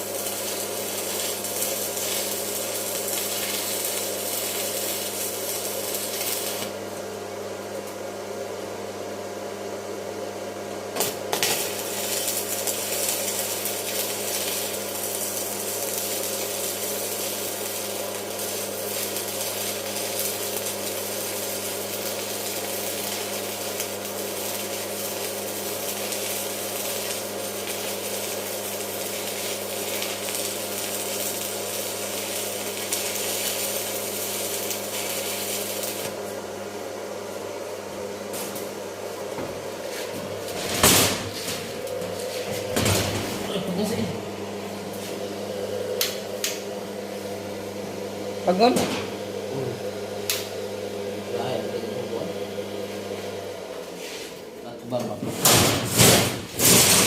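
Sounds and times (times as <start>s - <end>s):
arc welding crackling hiss: 0.0s - 8.0s, 10.9s - 36.6s, 38.3s - 38.8s, 53.8s - 57.0s.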